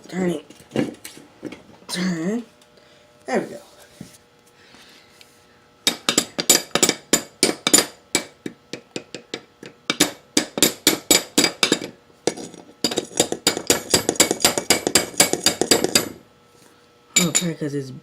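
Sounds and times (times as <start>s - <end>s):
hammer tapping on metal: 5.9s - 16.2s.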